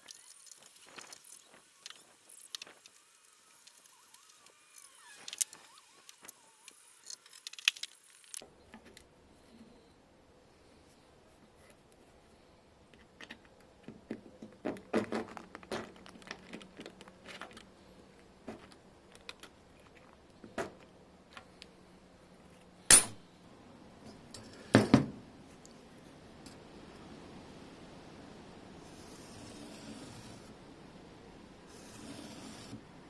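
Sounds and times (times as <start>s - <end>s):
sharp metallic clack: 22.9s - 23.2s.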